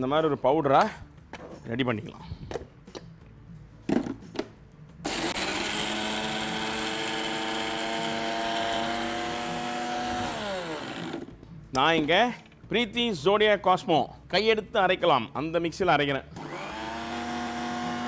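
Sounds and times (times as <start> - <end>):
mixer grinder whining: 5.1 - 11.2, 16.4 - 18.0.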